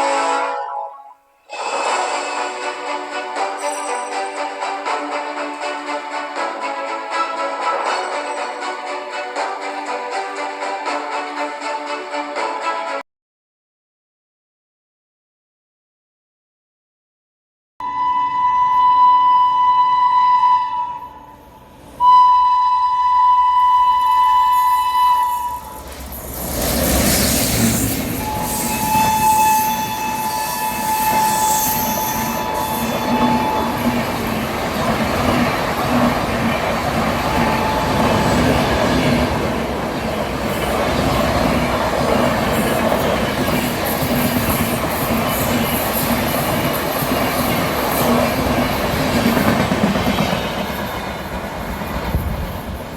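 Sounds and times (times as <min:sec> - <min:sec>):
train horn blasts: 0:00.0 - 0:00.9, 0:17.8 - 0:25.9, 0:28.2 - 0:34.0, 0:37.2 - 0:39.1
train rushing past: 0:01.5 - 0:12.9, 0:18.0 - 0:52.9.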